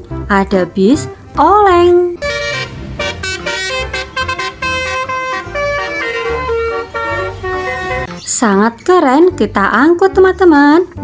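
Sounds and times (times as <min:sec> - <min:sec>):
multi-tone bus horn tune: 0:01.7 - 0:08.1.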